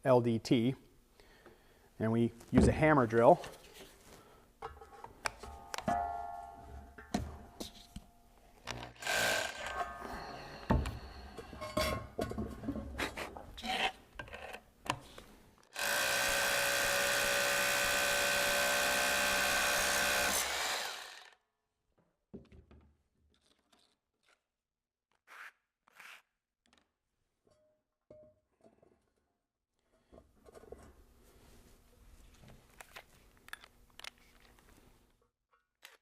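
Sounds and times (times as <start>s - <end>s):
hammer drill boring into stone: 8.7s - 10.7s, 15.7s - 21.4s.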